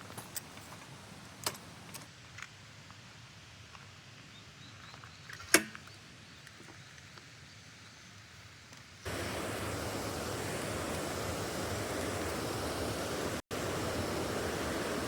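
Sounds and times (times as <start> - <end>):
wind-like rush: 9.1 - 15.0.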